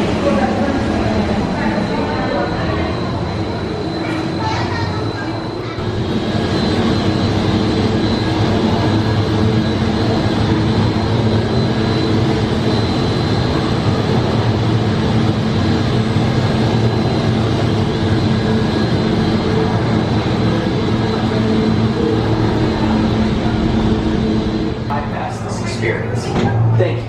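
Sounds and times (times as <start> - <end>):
faint high whine: 0.0 - 27.0
loud mechanical drone: 0.0 - 27.0.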